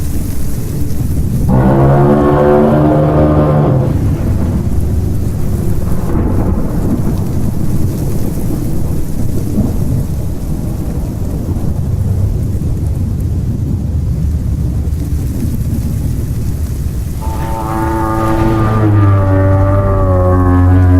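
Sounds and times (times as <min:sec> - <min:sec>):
deep low rumble: 0:00.0 - 0:20.9
low droning horn-like tone: 0:01.4 - 0:07.3, 0:17.2 - 0:20.9.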